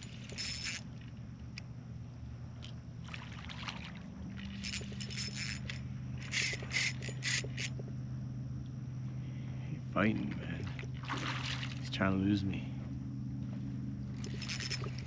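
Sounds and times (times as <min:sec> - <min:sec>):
steady low hum: 0:00.0 - 0:15.0
fish splashing at water surface: 0:03.0 - 0:04.7, 0:10.2 - 0:11.9.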